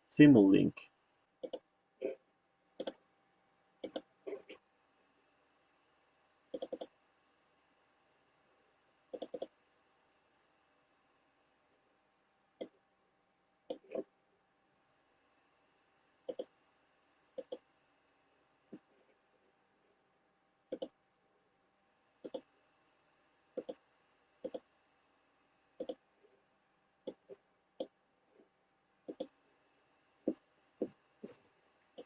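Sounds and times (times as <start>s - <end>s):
faint hum: 0.0s - 32.0s
computer mouse clicking: 1.4s - 1.7s, 2.8s - 3.0s, 3.8s - 4.5s, 6.5s - 7.0s, 9.1s - 9.6s, 13.7s - 14.1s, 16.2s - 16.5s, 17.4s - 17.7s, 20.7s - 21.0s, 22.2s - 22.5s, 23.6s - 23.8s, 24.4s - 24.7s, 25.8s - 26.0s, 27.0s - 28.0s, 29.0s - 29.4s.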